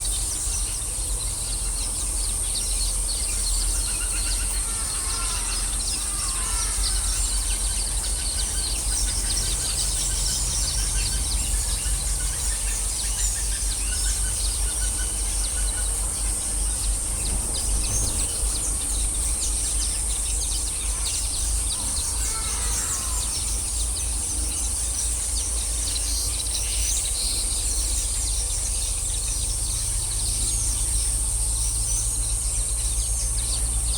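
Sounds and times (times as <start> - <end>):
high insect drone: 0.0 - 33.9
birds chirping: 0.1 - 33.9
low rumble: 13.6 - 22.2.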